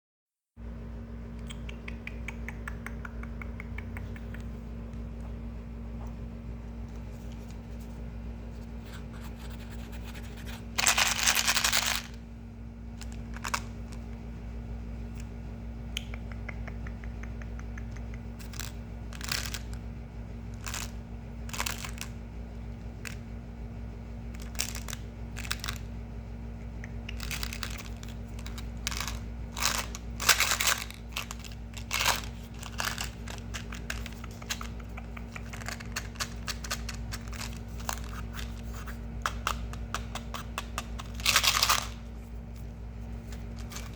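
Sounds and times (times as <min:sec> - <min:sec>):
clicks taps and scratches: 0:01.4 - 0:05.4, 0:16.0 - 0:19.8, 0:26.6 - 0:42.0.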